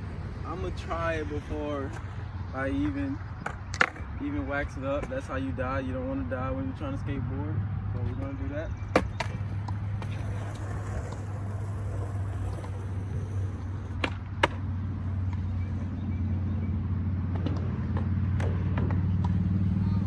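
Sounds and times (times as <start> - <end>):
skateboard clacks: 1.2 - 5.4, 8.8 - 15.8, 17.2 - 19.6.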